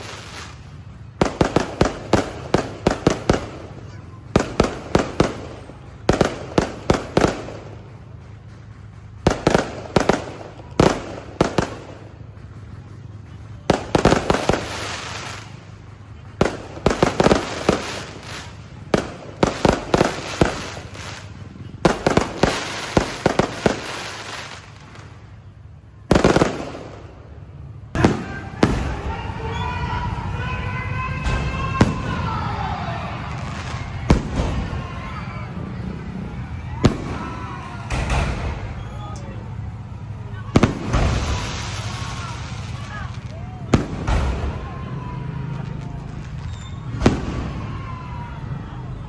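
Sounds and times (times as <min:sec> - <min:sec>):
fireworks crackling: 0:00.0 - 0:49.0.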